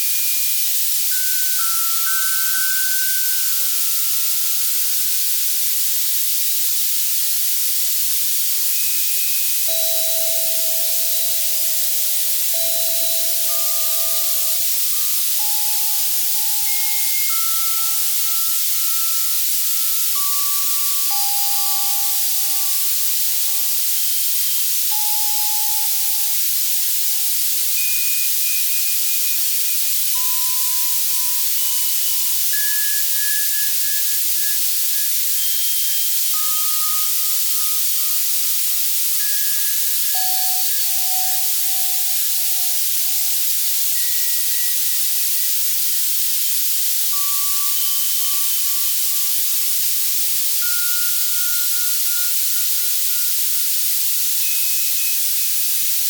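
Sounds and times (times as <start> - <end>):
white noise hiss: 0.0 - 56.0
synthesized bell notes: 9.0 - 23.7, 39.3 - 45.1.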